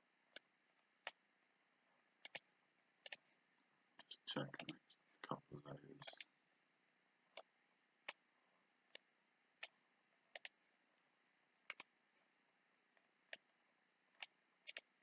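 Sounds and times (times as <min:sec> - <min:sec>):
computer mouse clicking: 0:00.3 - 0:01.2, 0:02.2 - 0:03.3, 0:07.3 - 0:08.2, 0:08.9 - 0:10.6, 0:11.6 - 0:12.0, 0:13.0 - 0:15.0.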